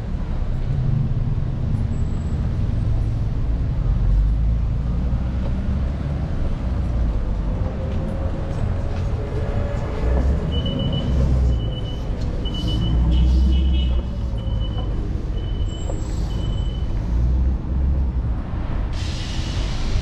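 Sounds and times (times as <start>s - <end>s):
street traffic: 0.0s - 20.0s
wind rumble: 17.0s - 20.0s.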